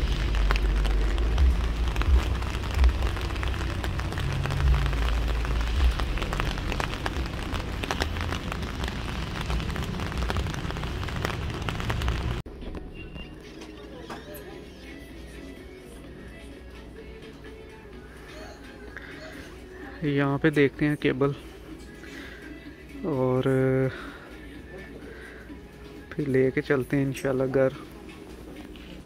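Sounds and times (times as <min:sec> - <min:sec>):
steady rain falling: 0:00.0 - 0:12.4.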